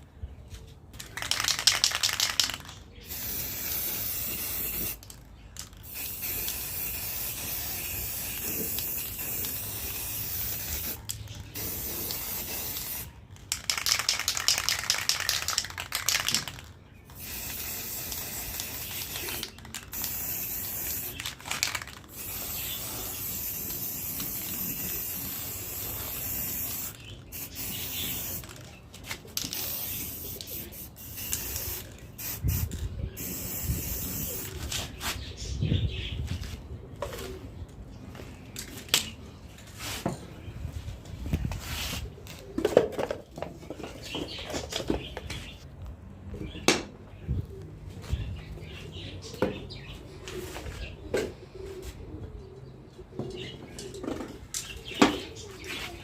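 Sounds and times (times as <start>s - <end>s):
spray paint can hissing: 1.0s - 28.6s, 29.2s - 34.6s
spray can ball rattling: 1.0s - 34.5s.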